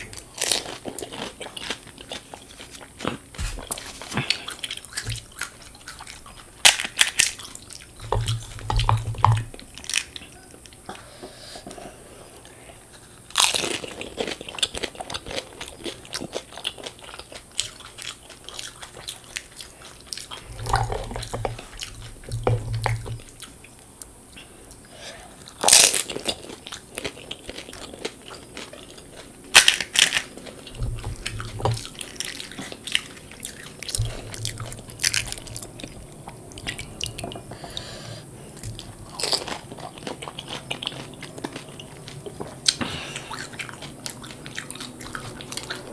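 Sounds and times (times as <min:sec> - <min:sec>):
chewing: 0:00.0 - 0:45.9
crisp shells crunching: 0:25.6 - 0:36.1.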